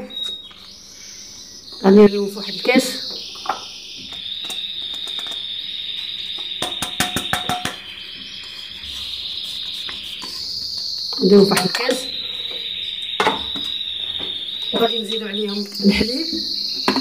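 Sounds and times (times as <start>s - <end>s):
crickets chirring: 0.0s - 17.0s
spoon knocking against glass: 6.6s - 7.8s.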